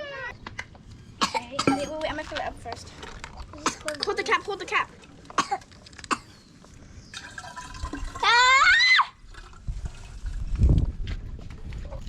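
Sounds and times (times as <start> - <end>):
water pouring into a bottle: 7.1 - 10.6.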